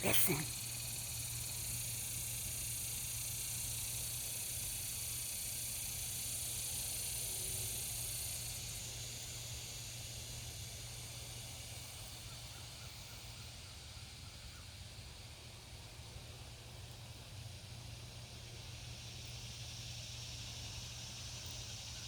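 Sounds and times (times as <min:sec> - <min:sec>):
high insect chorus: 0:00.0 - 0:22.0.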